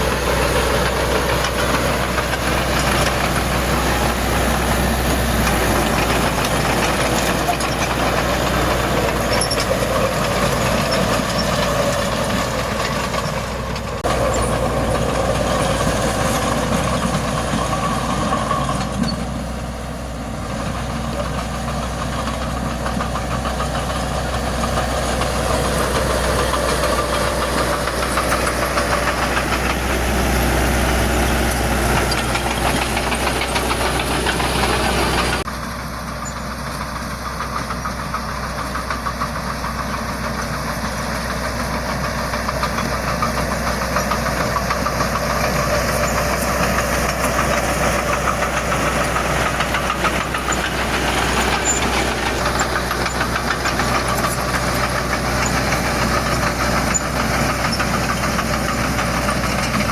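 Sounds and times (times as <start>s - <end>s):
heavy machinery diesel engine: 0.0s - 59.9s.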